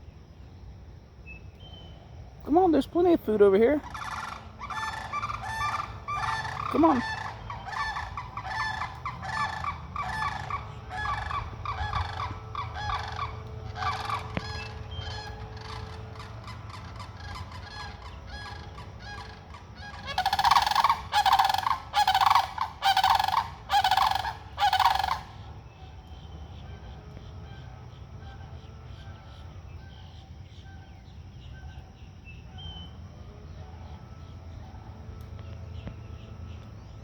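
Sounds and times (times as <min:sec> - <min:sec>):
cranes rattling calls: 0:03.5 - 0:26.0.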